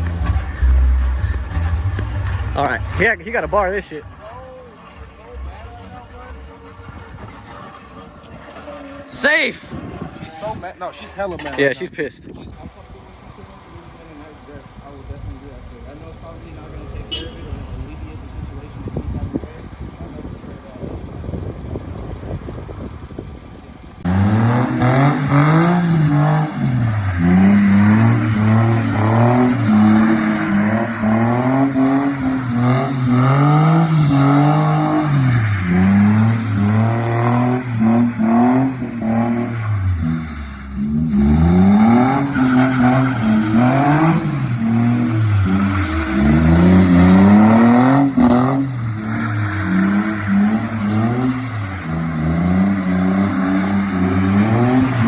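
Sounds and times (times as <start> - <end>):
car engine revving hard: 13.0 - 55.0.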